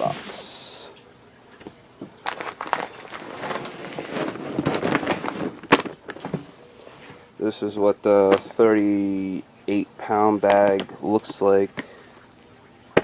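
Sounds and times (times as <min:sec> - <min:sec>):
packaging crackling and rustling: 0:02.2 - 0:07.2.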